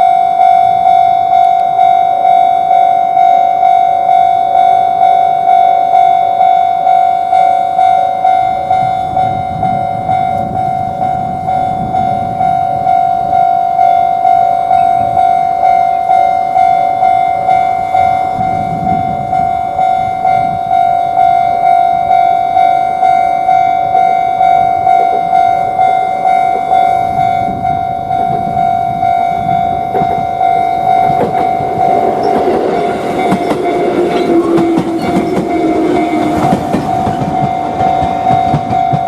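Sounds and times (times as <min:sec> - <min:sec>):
low train rumble: 0:00.0 - 0:39.0
railroad crossing bell ringing: 0:00.0 - 0:39.0.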